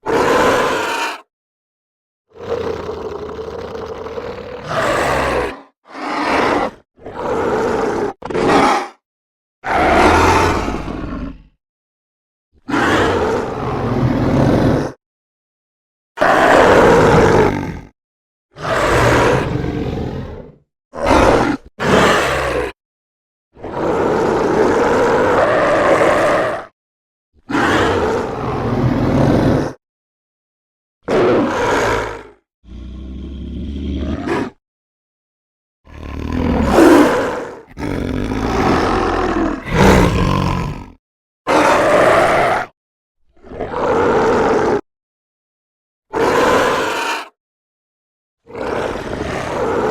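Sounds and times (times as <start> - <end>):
rough demon roars: 0.0 - 1.3, 2.3 - 9.0, 9.6 - 11.6, 12.7 - 15.0, 16.2 - 18.0, 18.6 - 22.8, 23.6 - 26.7, 27.5 - 29.8, 31.0 - 34.6, 35.9 - 44.8, 46.1 - 47.4, 48.5 - 49.9.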